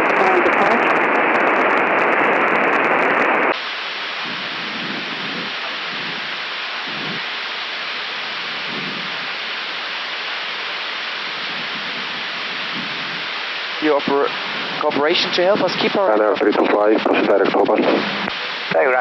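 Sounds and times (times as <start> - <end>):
muffled voices: 0.0 - 1.7, 13.7 - 19.0
dull hiss: 3.6 - 19.0.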